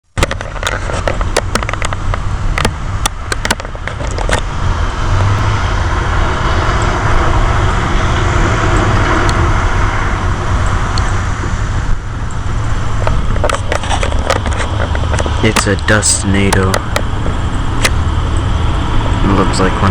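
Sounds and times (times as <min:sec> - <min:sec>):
outdoor rushing rumble: 0:00.0 - 0:19.9
sharp clicks: 0:12.2 - 0:19.2.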